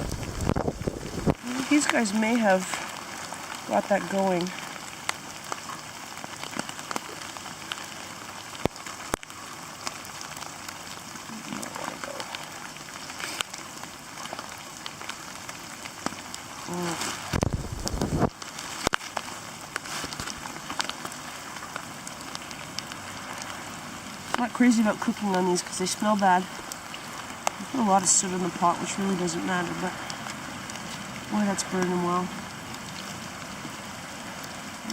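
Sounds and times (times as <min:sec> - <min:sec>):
loud low rumble: 0:00.0 - 0:01.4
heavy rain pattering: 0:00.0 - 0:34.9.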